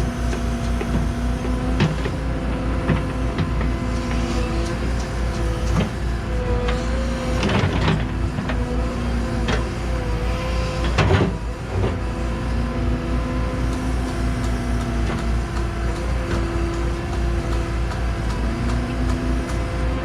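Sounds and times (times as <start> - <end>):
excavator engine and hydraulics: 0.0 - 20.0.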